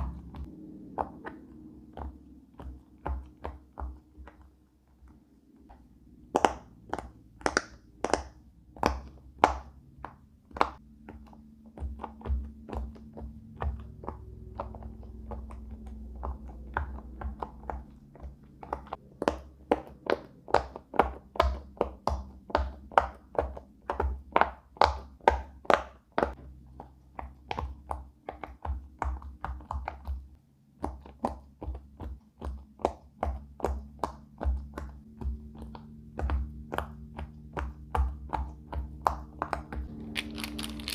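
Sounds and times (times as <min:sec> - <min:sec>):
fidget toy bubbles popping: 0:05.7 - 0:40.9
background music: 0:39.7 - 0:40.9.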